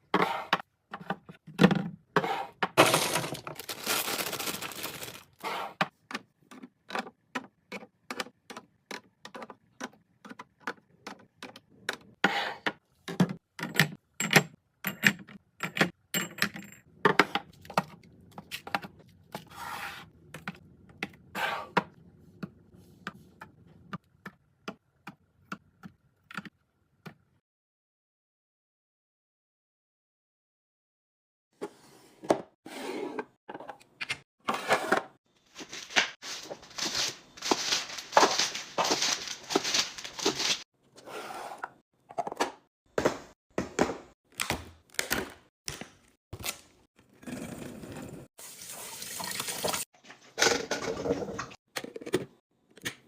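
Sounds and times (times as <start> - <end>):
rustling crinkling packaging: 2.8 - 5.4, 35.4 - 40.6.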